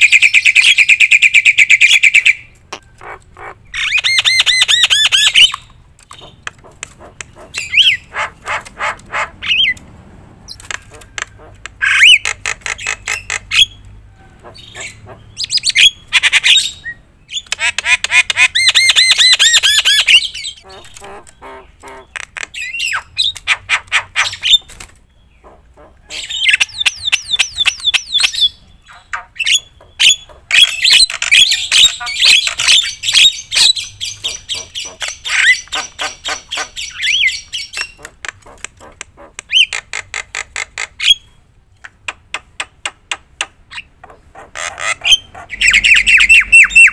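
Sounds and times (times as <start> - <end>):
myna bird singing: 0.0 - 9.8, 10.4 - 46.9.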